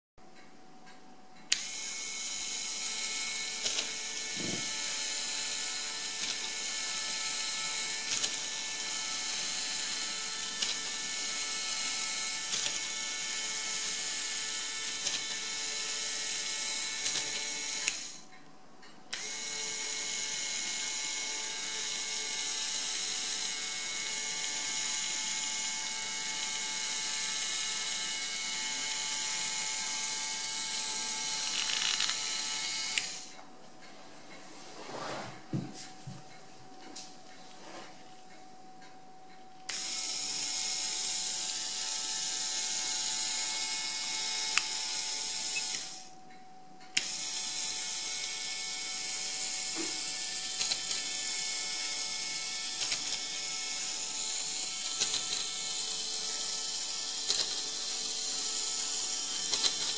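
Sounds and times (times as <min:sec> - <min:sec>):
small electric motor whine: 0:01.5 - 0:18.2, 0:19.1 - 0:33.4, 0:39.7 - 0:46.2, 0:47.0 - 0:59.9
plastic gears ticking and rattling: 0:47.0 - 0:59.9.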